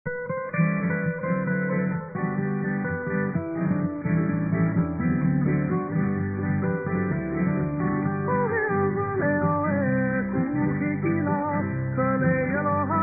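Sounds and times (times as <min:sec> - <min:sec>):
acoustic guitar plucked notes and chords: 0:00.1 - 0:13.0.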